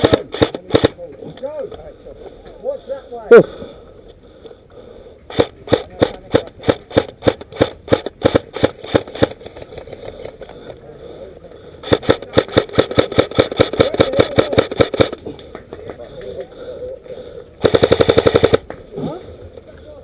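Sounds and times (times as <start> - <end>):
airsoft rifle shots: 0.0 - 1.1, 5.3 - 10.3, 11.8 - 15.3, 17.6 - 19.1.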